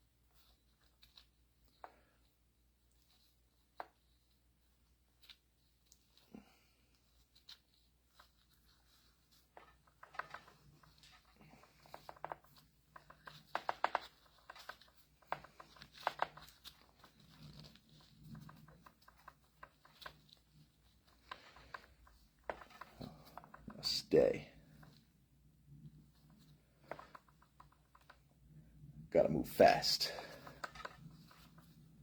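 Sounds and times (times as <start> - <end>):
hands handling small parts: 7.0 - 24.0, 26.1 - 28.3, 29.9 - 31.8.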